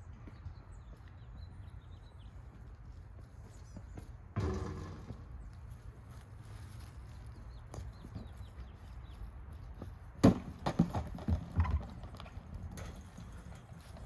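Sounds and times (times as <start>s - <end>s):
sharp knocks: 4.4s - 5.3s.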